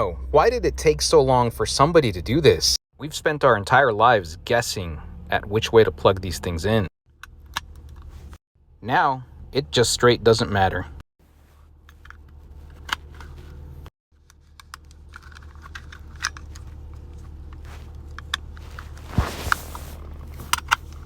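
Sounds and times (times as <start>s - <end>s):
brushing sound: 18.6s - 20.7s.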